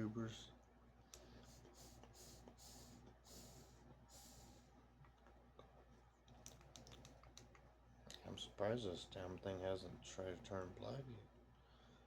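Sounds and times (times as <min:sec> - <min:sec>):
faint low hum: 0:00.0 - 0:12.0
soft breath-like hisses: 0:01.1 - 0:04.8
small clicks: 0:06.3 - 0:08.2.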